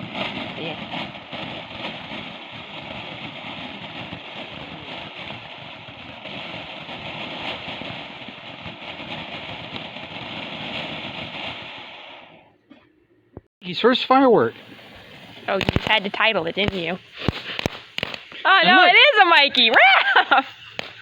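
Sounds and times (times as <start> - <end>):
firework fountain spraying sparks: 0.0 - 12.5, 13.6 - 21.0.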